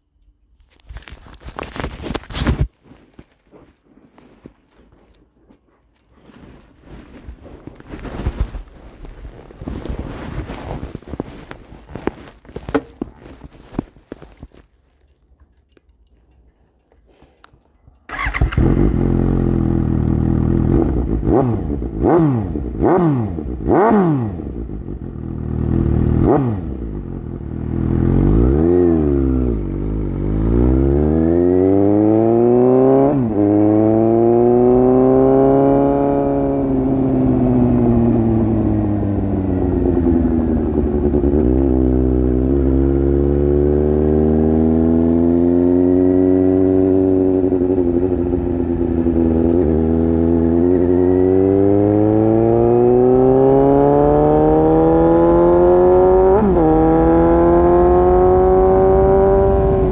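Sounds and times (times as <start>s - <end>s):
motorcycle engine revving: 18.1s - 59.9s.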